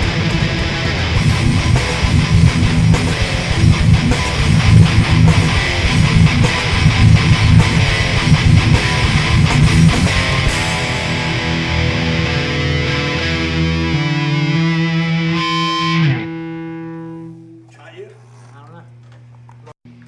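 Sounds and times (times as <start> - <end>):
rock band playing live: 0.0 - 17.5.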